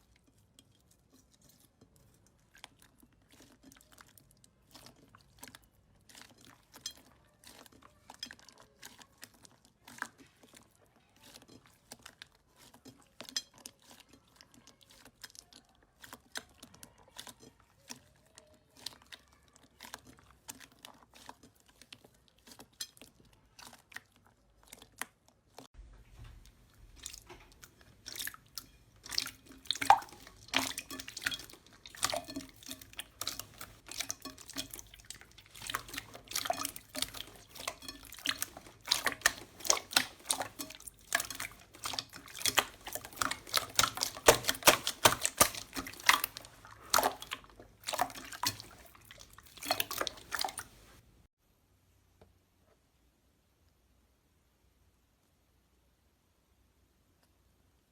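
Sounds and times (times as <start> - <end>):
slime squishing wet clicks: 26.4 - 50.9.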